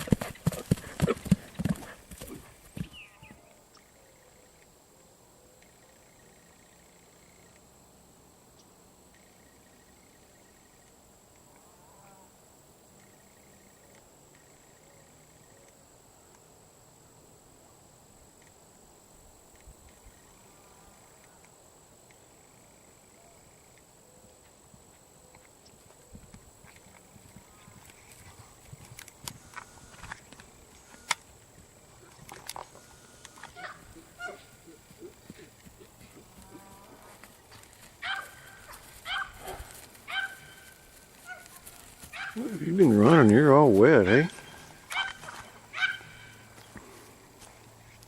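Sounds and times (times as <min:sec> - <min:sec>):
faint background noise: 0:00.0 - 0:48.0
high-pitched insect drone: 0:26.6 - 0:48.0
animal high-pitched calls: 0:33.4 - 0:35.5, 0:38.0 - 0:42.6, 0:44.3 - 0:46.5.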